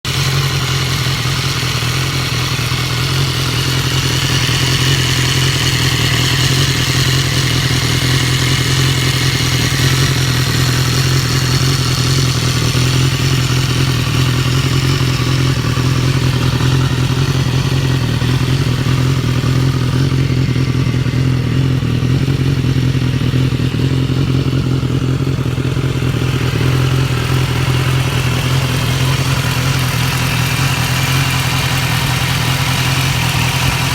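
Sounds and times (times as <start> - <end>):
engine ticking: 0.0 - 33.9
motorcycle engine running: 0.0 - 33.9.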